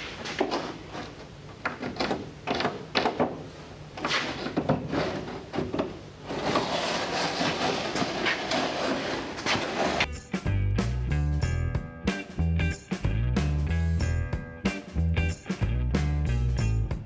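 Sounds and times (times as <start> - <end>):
pencil scratching on plywood: 6.3 - 10.1.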